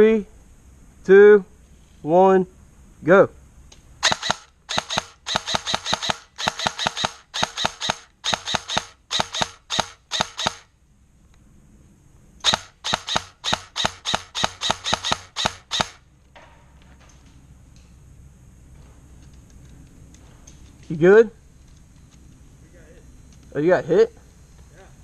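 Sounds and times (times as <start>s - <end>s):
airsoft gun shots: 4.0s - 10.7s, 12.4s - 16.1s.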